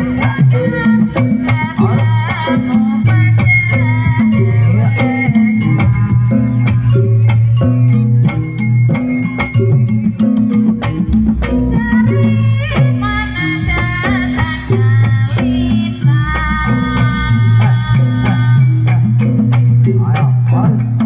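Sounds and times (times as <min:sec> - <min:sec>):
gamelan ensemble playing: 0:00.0 - 0:21.0
wavering melodic line: 0:02.6 - 0:15.9
drum strokes: 0:03.1 - 0:21.0.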